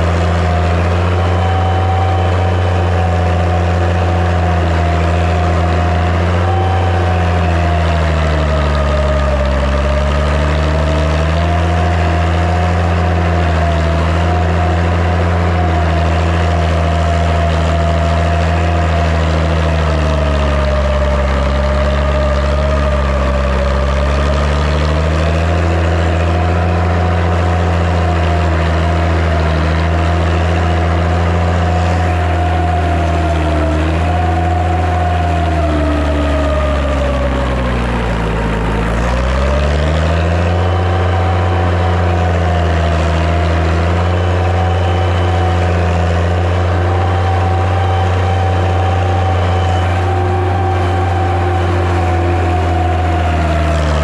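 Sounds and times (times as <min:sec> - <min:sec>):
engine whine: 0:00.0 - 0:54.0
tractor diesel engine running: 0:00.0 - 0:54.0.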